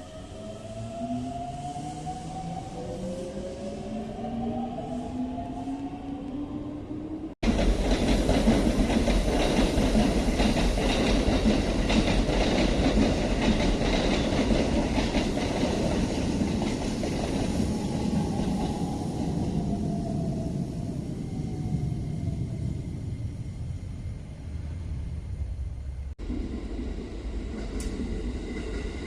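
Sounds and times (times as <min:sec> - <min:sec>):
low train rumble: 0:00.0 - 0:29.0
train wheels clacking: 0:07.4 - 0:18.8.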